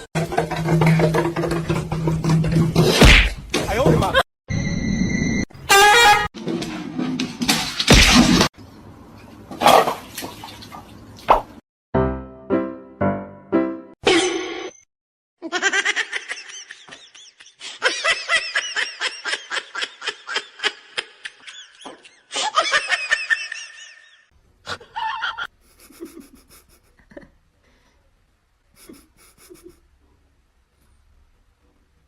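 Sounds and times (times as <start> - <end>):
person laughing hard: 15.4 - 27.2, 28.8 - 29.8.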